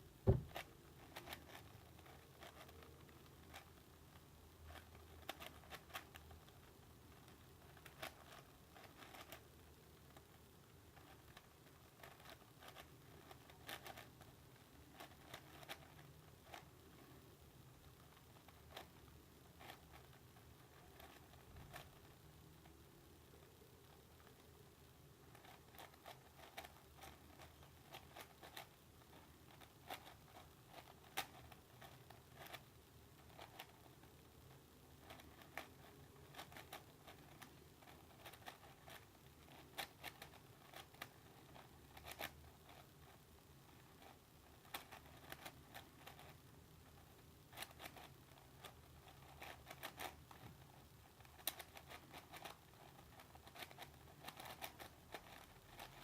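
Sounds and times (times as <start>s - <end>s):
plastic puzzle cube clicking: 0.3s - 3.7s, 35.0s - 42.8s, 47.5s - 50.6s, 51.2s - 56.0s.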